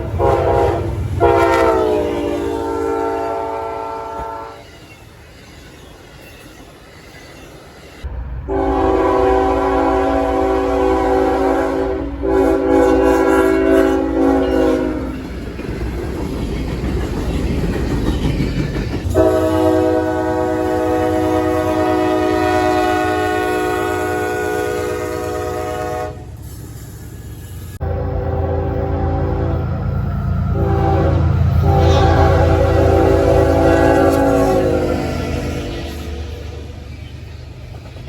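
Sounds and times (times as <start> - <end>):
locomotive air horn: 0.0 - 4.6, 8.5 - 15.2, 19.1 - 26.6, 27.6 - 36.4
train rumbling and clacking on rails: 0.0 - 38.0.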